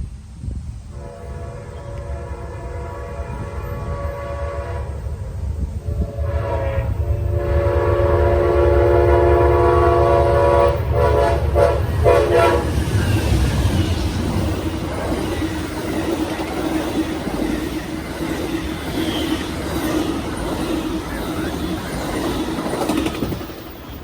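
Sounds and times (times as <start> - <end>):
locomotive rumble: 0.0 - 24.0
train passing by: 0.0 - 24.0
train air horn blasts: 0.9 - 15.3.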